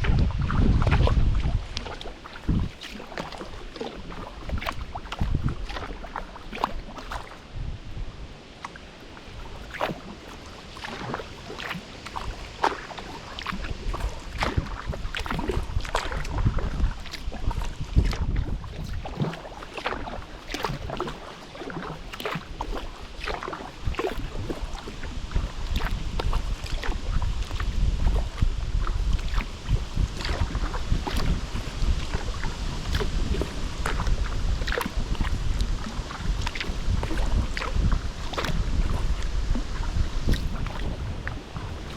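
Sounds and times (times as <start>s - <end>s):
low rumble: 0.0s - 1.7s
paddle splashing in water: 0.0s - 41.9s.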